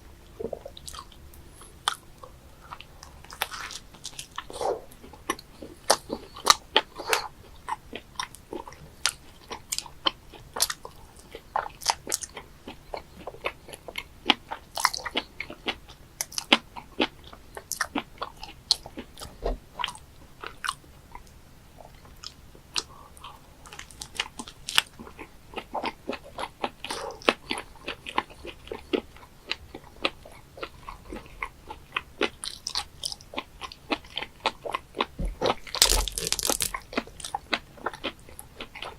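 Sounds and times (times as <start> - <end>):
chewing with wet clicks and smacks: 0.2 - 38.9.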